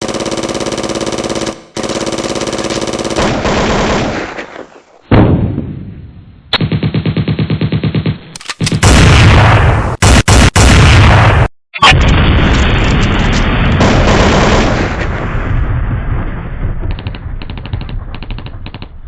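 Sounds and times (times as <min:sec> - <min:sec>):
machine-gun fire: 0:00.0 - 0:04.4, 0:06.6 - 0:11.5, 0:13.7 - 0:15.3, 0:16.8 - 0:19.0
loud explosion blast: 0:05.1 - 0:06.2, 0:08.8 - 0:19.0.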